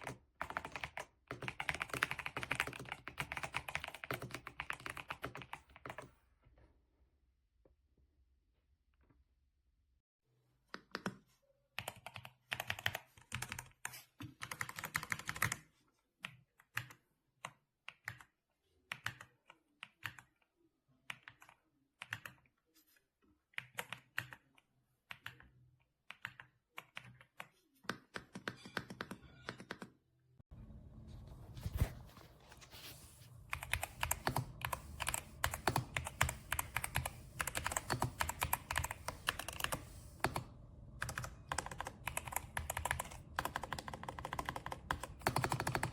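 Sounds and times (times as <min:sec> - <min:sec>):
mechanical keyboard typing: 0:00.0 - 0:06.1, 0:14.4 - 0:15.6, 0:33.5 - 0:45.9.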